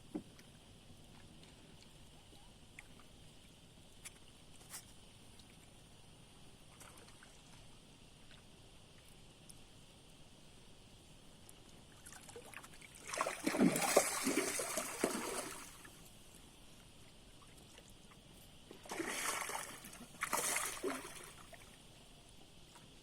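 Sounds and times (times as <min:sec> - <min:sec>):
water splashing: 0:12.3 - 0:15.9, 0:18.8 - 0:21.7.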